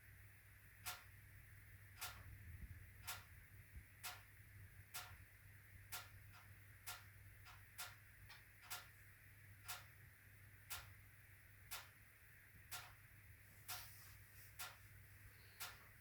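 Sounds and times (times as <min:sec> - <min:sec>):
stove making sharp ticks: 0:00.8 - 0:01.1, 0:01.9 - 0:02.4, 0:05.8 - 0:09.0, 0:10.6 - 0:11.0, 0:11.6 - 0:13.1.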